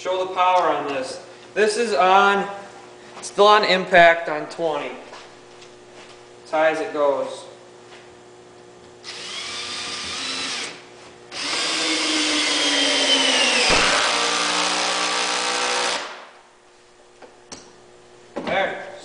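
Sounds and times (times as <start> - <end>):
cordless drill driving a bolt: 9.0 - 16.2.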